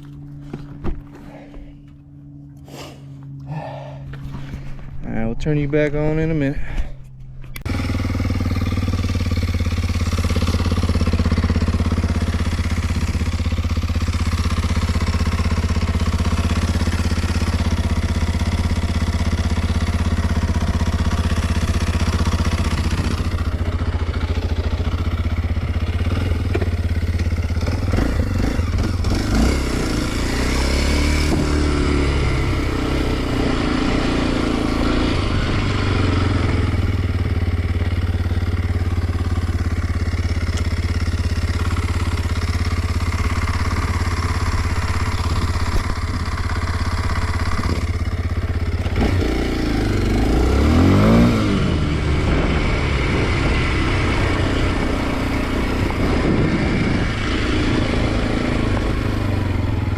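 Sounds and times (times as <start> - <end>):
motorcycle engine idling: 6.0 - 59.9.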